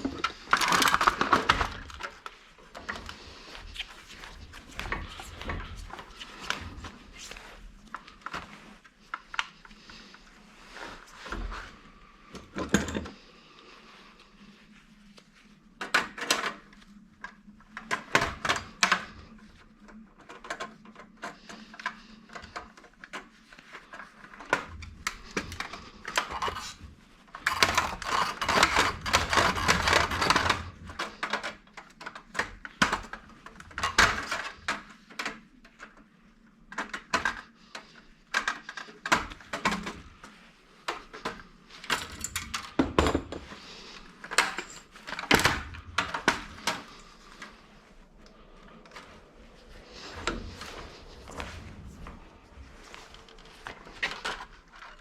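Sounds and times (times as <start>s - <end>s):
small metal and plastic parts clattering: 0.0s - 7.0s, 15.8s - 36.0s, 36.6s - 47.6s, 52.8s - 55.0s
rattling and scraping: 38.4s - 55.0s.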